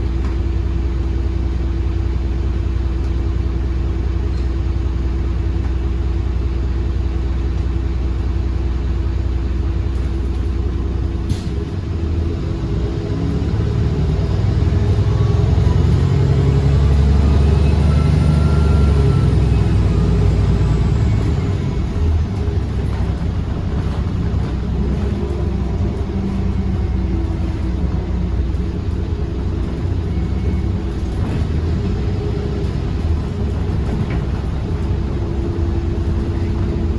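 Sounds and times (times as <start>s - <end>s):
bus engine hum: 0.0s - 36.9s
bus rumble: 0.0s - 36.9s.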